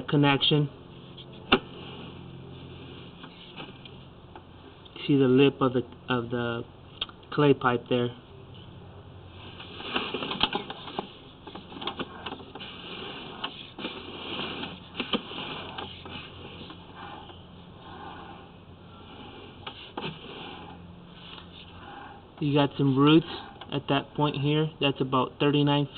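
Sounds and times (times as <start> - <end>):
steady low hum: 0.0 - 25.9
camera cable scraping in pipe: 9.5 - 18.4.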